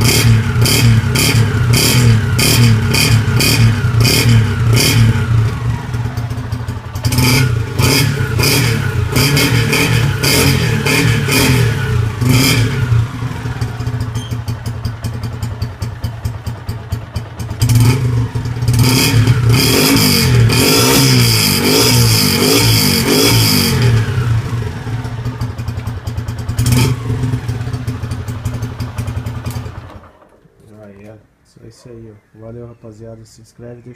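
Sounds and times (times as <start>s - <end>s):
motorcycle engine revving: 0.0s - 30.4s.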